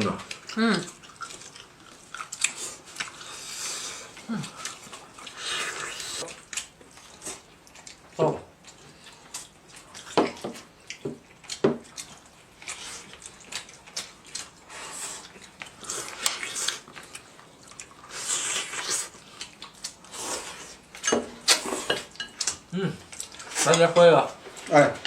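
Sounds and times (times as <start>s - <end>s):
slurping and chewing: 0.2s - 23.8s
chopsticks clinking on bowls: 21.0s - 22.6s.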